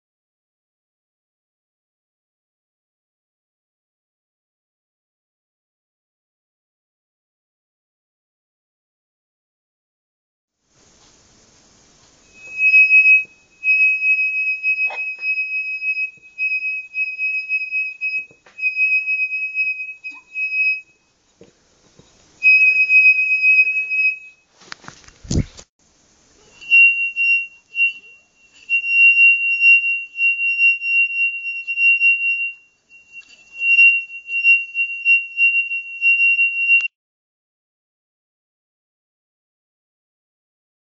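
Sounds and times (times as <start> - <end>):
singing glass ringing tone: 12.2 - 21.0, 22.4 - 24.4, 26.4 - 36.9.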